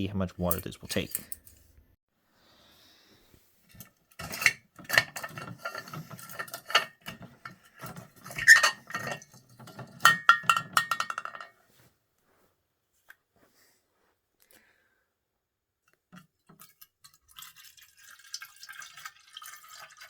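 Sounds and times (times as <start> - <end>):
metal canteen clinking and rattling: 3.7 - 11.6.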